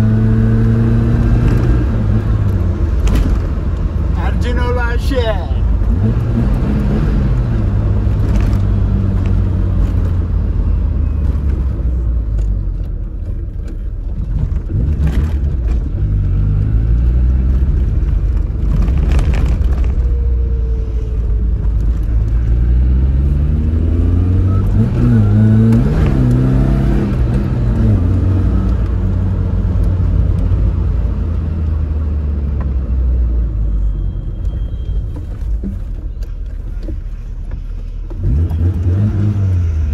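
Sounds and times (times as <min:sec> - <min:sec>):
car engine revving: 0:00.0 - 0:04.7, 0:05.7 - 0:10.7, 0:20.8 - 0:32.6, 0:37.8 - 0:39.9.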